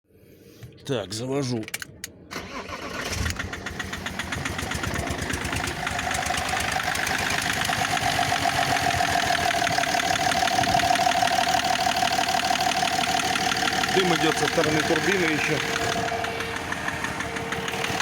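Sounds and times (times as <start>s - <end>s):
diesel engine cranking and idling: 0.9s - 18.0s
rhythmic engine knock: 3.7s - 18.0s
steady whine: 13.9s - 18.0s.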